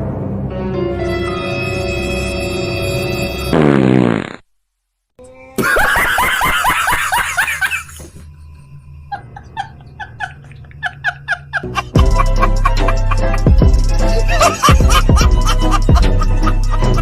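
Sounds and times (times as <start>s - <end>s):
high-pitched laughter: 5.6s - 8.2s, 9.1s - 17.0s.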